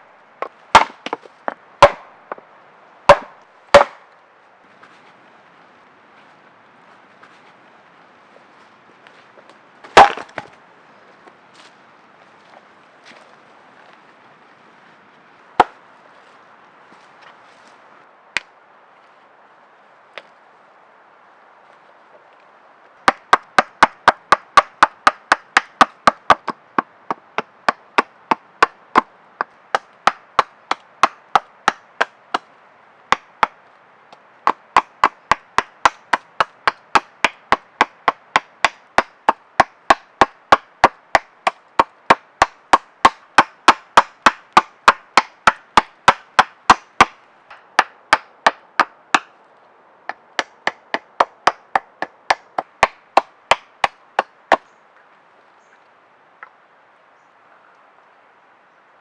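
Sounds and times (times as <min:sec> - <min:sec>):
blade chopping into wood: 0:00.4 - 0:02.1, 0:03.1 - 0:04.0, 0:09.9 - 0:10.5.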